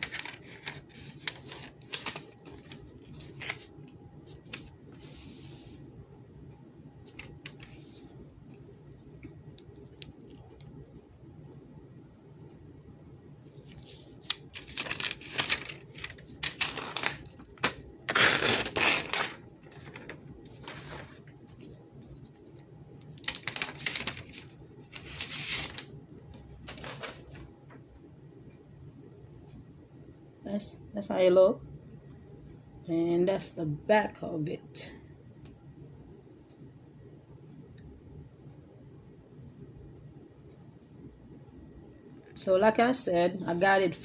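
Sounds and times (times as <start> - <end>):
packaging rustling and tearing: 0.0 - 3.7, 13.7 - 21.2, 23.2 - 25.9, 26.6 - 27.5.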